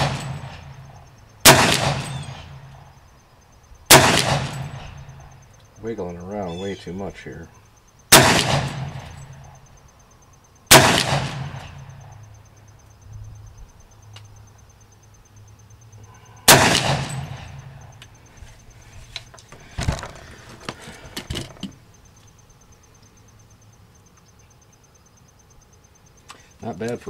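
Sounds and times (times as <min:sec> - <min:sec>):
gunshots ringing: 0:00.0 - 0:00.8, 0:01.4 - 0:02.6, 0:03.9 - 0:05.1, 0:08.1 - 0:09.4, 0:10.7 - 0:12.0, 0:16.5 - 0:17.8.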